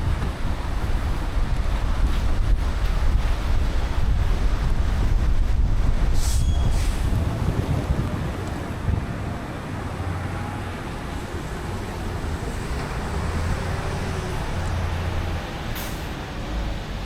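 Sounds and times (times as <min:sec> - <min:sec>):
car engine and road rumble: 0:00.0 - 0:17.0
tyre hiss on wet road: 0:06.1 - 0:07.2.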